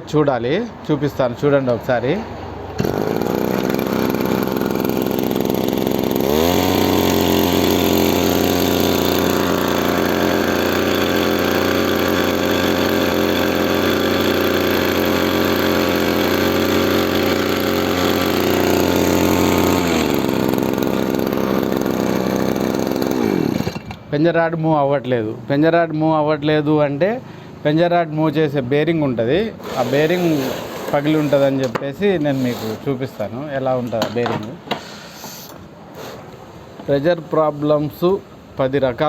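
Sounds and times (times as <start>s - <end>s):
small engine revving: 2.8s - 24.0s, 29.6s - 31.6s.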